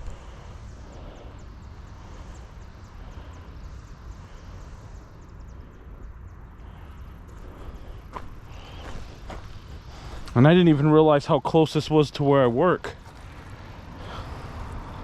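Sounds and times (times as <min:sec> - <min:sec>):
low rumble: 0:00.0 - 0:10.4.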